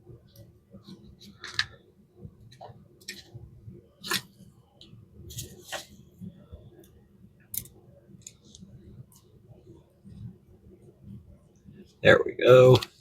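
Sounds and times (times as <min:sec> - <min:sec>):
light clicks of small parts: 0:06.8 - 0:09.3.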